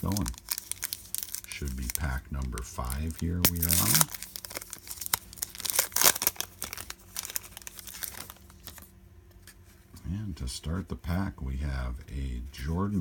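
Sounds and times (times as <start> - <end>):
foil wrapper crinkling: 0.0 - 8.9.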